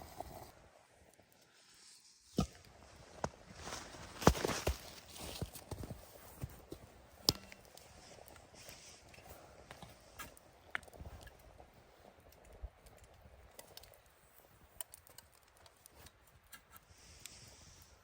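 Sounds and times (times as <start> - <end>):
small clicks and crackles: 4.2 - 18.0.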